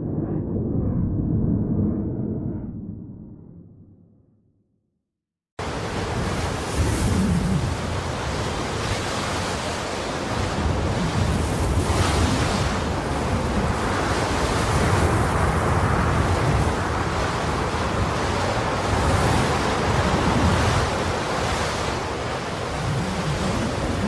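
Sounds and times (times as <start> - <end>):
low rumble: 0.0 - 4.6
rushing wind or surf noise: 5.6 - 24.0.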